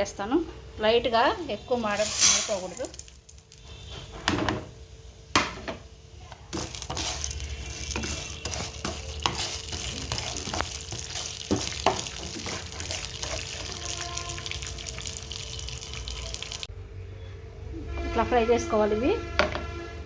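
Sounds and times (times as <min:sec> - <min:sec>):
seeds sizzling in hot oil: 0:01.0 - 0:04.2, 0:04.9 - 0:16.7
spatula scraping a pan: 0:06.5 - 0:14.3.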